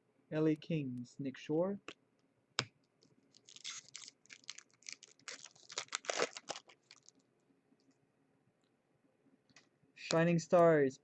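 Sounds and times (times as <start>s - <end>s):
foil wrapper tearing and crinkling: 3.3s - 7.2s.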